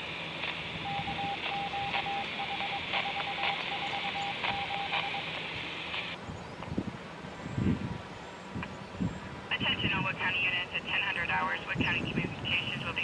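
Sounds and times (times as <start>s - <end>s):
radio static hiss: 0.0s - 6.2s, 8.6s - 13.0s
morse code beeps: 0.8s - 5.4s.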